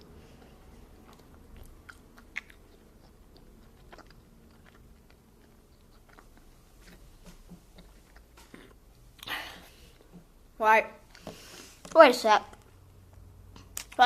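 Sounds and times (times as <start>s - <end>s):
chewing candy: 0.3s - 9.3s
mouth clicks and smacks: 0.4s - 9.4s, 13.6s - 14.0s.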